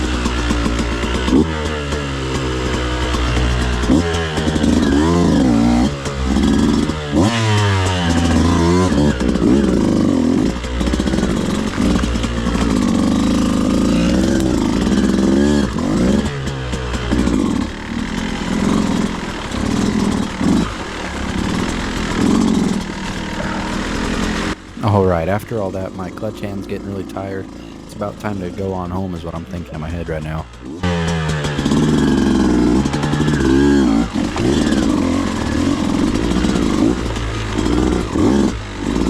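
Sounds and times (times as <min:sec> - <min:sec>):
dirt bike engine revving: 0:00.0 - 0:39.0.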